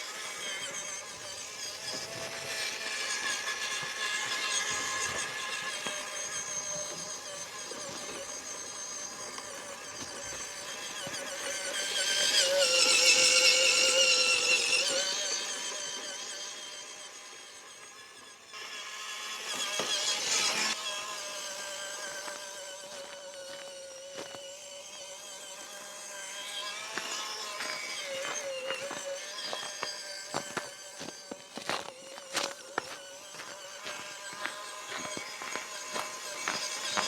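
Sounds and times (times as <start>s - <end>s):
toy car motor whining: 0.0s - 37.0s.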